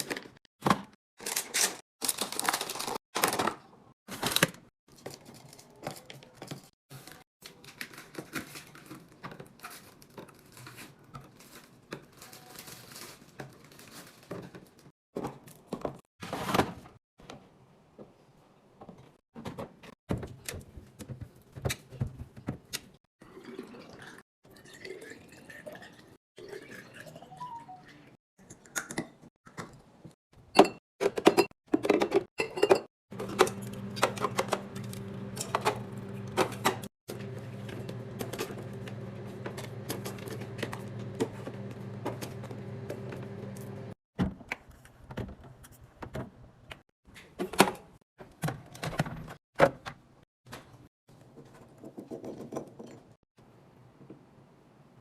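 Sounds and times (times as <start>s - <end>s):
liquid flowing into container: 23.2s - 27.6s.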